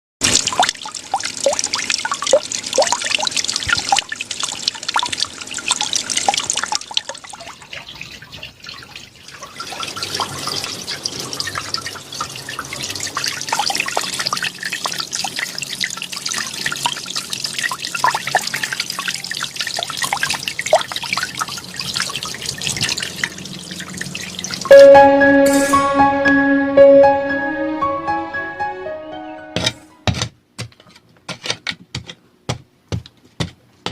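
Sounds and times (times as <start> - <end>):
waterfall splashing into pond: 0.2 - 24.7.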